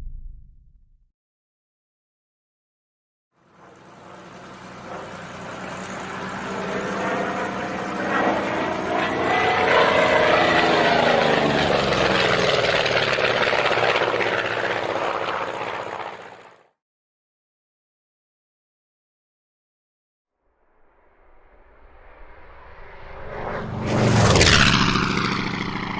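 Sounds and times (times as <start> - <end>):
propeller plane flying past: 3.4 - 16.8, 21.3 - 25.9.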